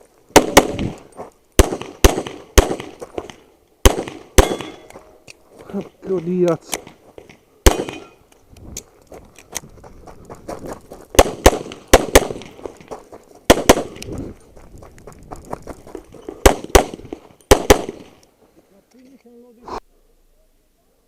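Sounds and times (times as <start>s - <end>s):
handgun shots: 1.6s - 4.9s, 7.6s - 8.1s.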